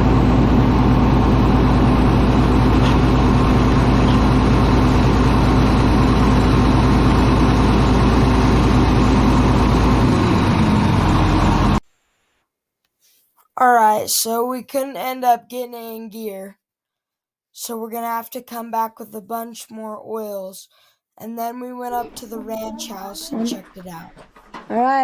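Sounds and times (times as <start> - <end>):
bulldozer engine running: 0.0 - 11.8, 21.8 - 25.0.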